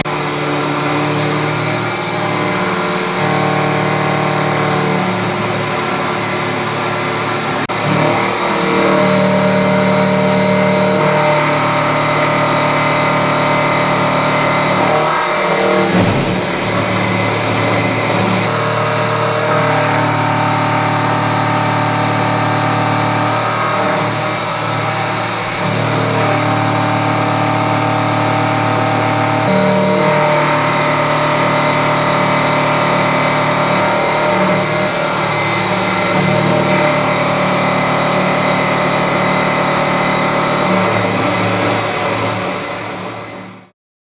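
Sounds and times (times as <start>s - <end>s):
machine motors whining: 0.0s - 43.6s.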